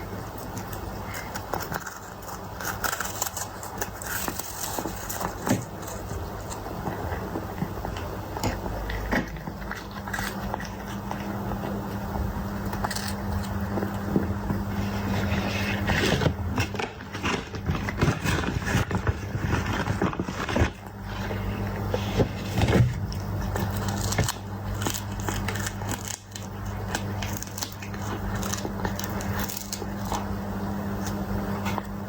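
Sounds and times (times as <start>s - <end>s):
steady low hum: 0.0s - 32.0s
cat crunching food: 12.6s - 20.8s, 23.2s - 31.9s.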